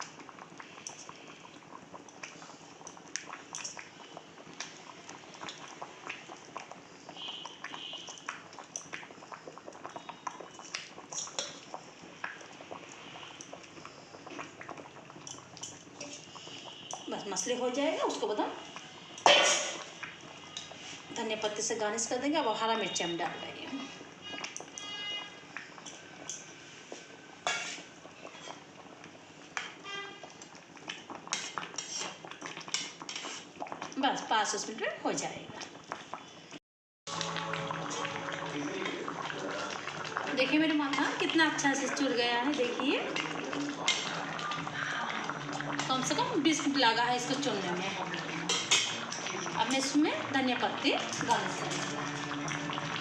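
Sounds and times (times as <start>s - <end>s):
curry bubbling in a pot: 0.0s - 53.0s
metal spoon clinking on pot: 48.5s - 50.0s, 51.1s - 52.6s.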